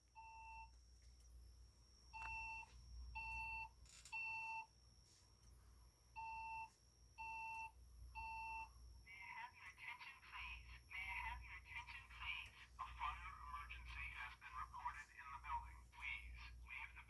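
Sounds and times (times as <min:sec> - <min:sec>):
fire alarm beeps: 0:00.0 - 0:09.0.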